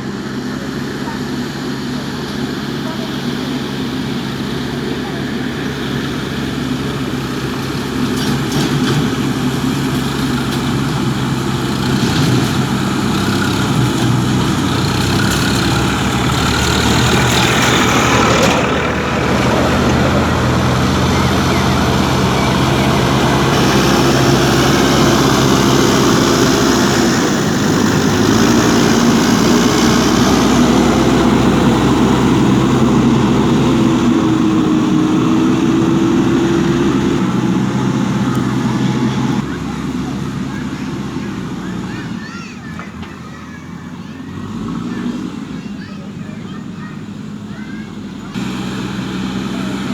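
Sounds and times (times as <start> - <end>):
diesel engine running: 0.0 - 49.9
held whine: 10.4 - 41.7.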